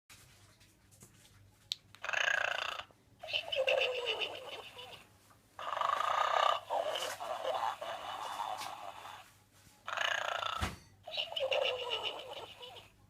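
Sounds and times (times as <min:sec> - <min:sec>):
toy pig snoring: 0:02.0 - 0:05.0, 0:05.6 - 0:09.2, 0:09.9 - 0:12.9.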